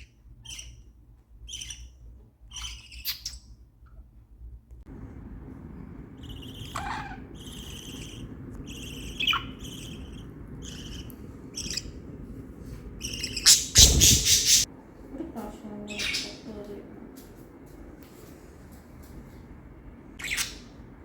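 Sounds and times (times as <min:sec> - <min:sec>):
budgerigars chirping: 0:06.2 - 0:12.0, 0:13.0 - 0:14.7, 0:20.2 - 0:20.8.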